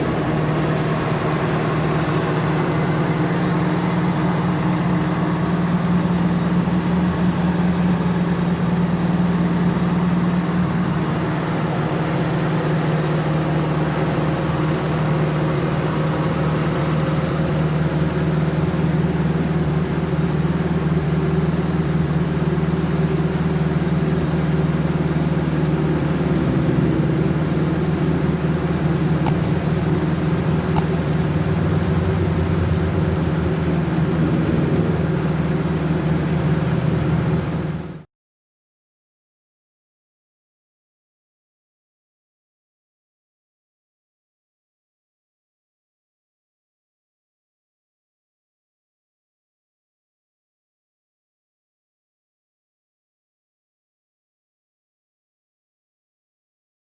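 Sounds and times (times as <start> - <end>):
car engine idling: 0.0 - 38.0.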